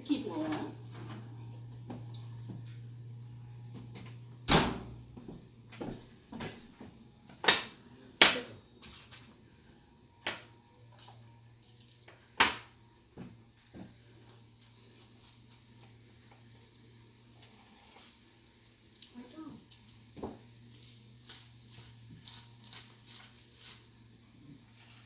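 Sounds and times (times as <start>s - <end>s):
low hum: 0.0s - 6.3s
oven door knock: 4.4s - 5.0s.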